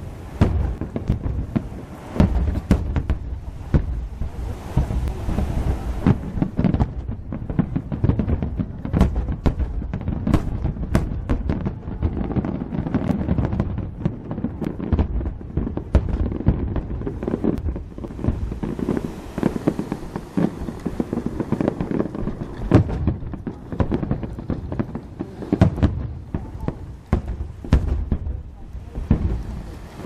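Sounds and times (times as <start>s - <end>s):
fireworks bangs: 0.0s - 30.0s
hissing crackle: 0.0s - 30.0s.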